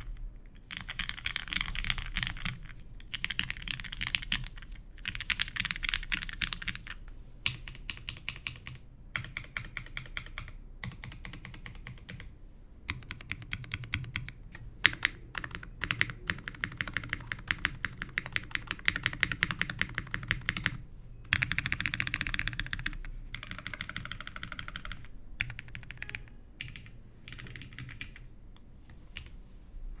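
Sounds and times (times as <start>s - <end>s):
mechanical keyboard typing: 0.0s - 12.3s, 12.9s - 28.3s.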